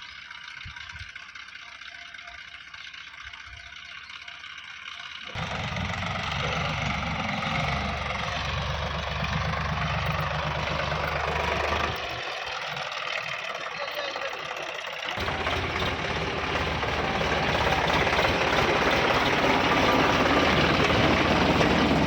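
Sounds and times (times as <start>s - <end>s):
diesel engine of heavy machinery: 0.0s - 22.0s.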